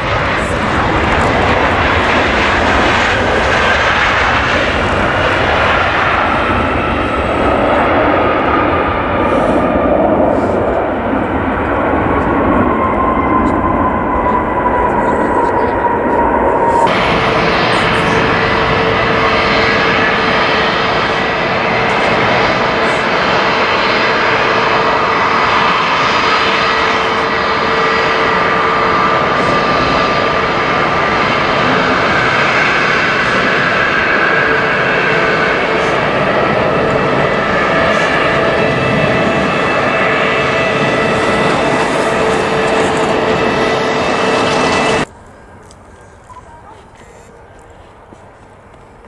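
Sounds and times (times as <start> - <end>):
jet engines roaring: 0.0 - 46.4.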